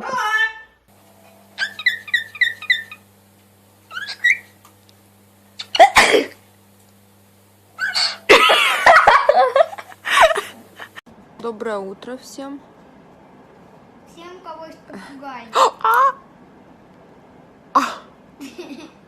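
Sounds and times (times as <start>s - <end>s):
parrot squawking and screeching: 0.0s - 0.8s, 1.6s - 3.0s, 3.9s - 4.5s, 7.8s - 8.2s
parrot chirping: 1.6s - 3.1s, 3.9s - 4.6s, 7.8s - 8.2s.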